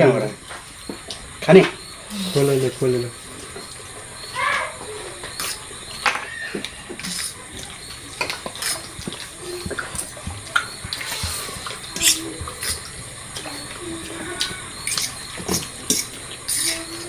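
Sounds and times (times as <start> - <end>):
utensils clicking on dishes: 4.8 - 17.0
slurping and chewing noodles: 6.6 - 17.0.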